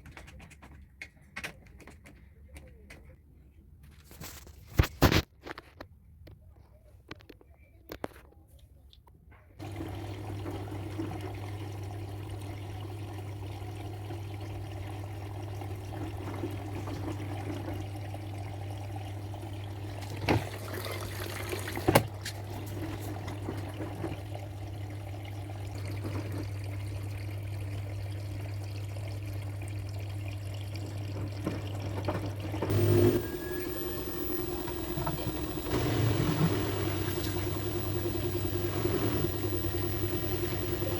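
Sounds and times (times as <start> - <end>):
water running into drum: 9.6 - 40.9
electrical hum: 32.7 - 40.9.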